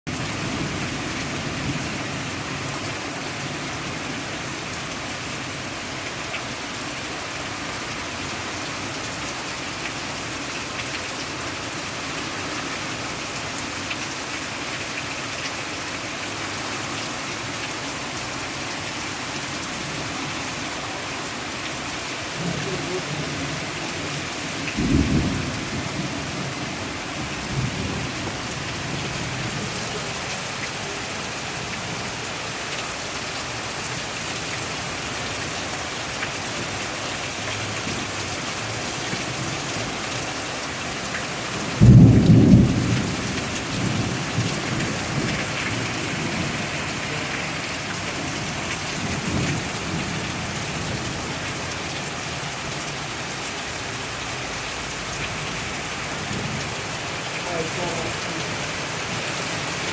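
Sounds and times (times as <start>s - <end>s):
heavy rain pouring: 0.1s - 59.9s.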